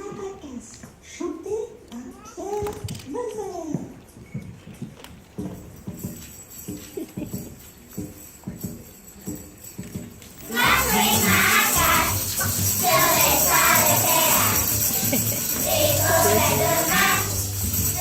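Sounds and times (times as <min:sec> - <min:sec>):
soft taps and shuffles: 0:02.6 - 0:10.5
maracas and jingles shaking: 0:05.5 - 0:18.0
children singing a song: 0:10.4 - 0:18.0.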